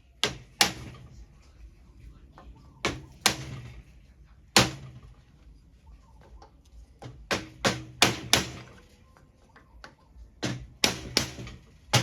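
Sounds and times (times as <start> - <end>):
hammer striking metal: 2.8 - 3.8, 7.2 - 8.8, 10.4 - 12.0.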